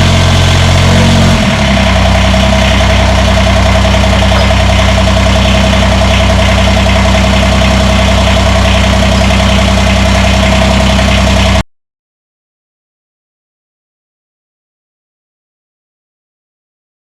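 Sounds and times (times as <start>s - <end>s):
steady whine: 0.0s - 11.6s
tractor diesel engine running: 0.0s - 11.6s.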